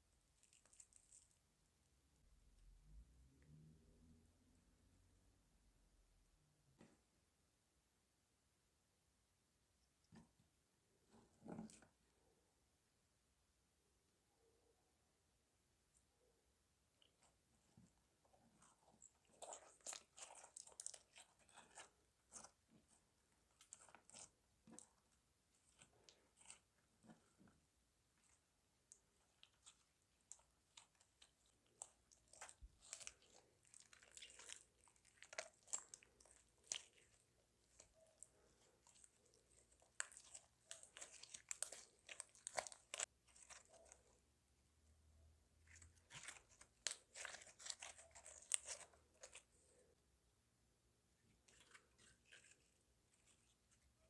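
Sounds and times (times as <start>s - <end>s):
slime squishing with sticky crackles: 0.0s - 2.0s, 9.9s - 12.1s, 16.2s - 50.2s, 51.2s - 54.0s.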